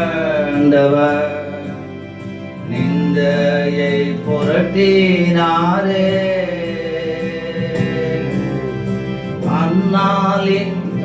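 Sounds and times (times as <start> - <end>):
instrumental accompaniment: 0.0 - 11.0
person singing: 0.0 - 11.0.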